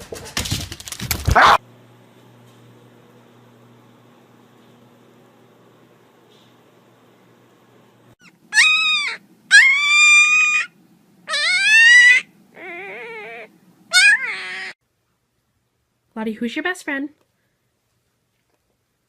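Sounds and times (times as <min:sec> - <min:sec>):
dog whining: 0:01.4 - 0:01.6, 0:08.2 - 0:14.8.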